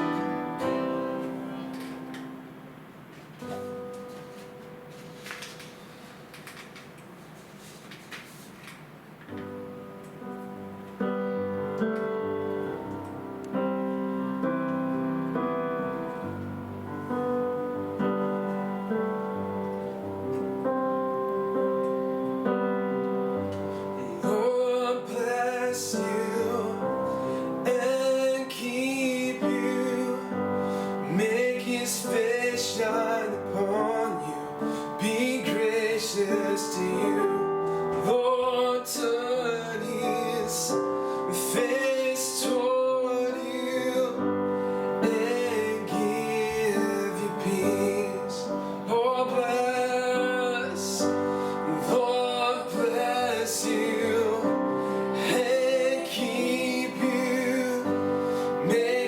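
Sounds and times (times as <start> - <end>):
piano chords: 0.0 - 7.2, 8.8 - 59.0.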